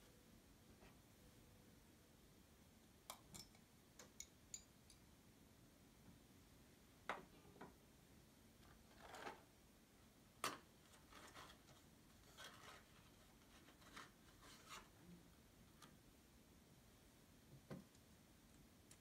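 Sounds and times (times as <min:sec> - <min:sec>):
soft rustling and rubbing: 0:10.8 - 0:15.0.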